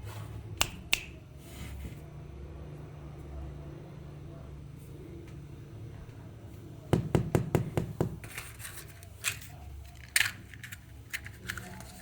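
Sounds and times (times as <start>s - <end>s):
scrape: 0.0s - 0.4s, 1.4s - 2.1s
rustling and handling noise: 8.1s - 12.0s.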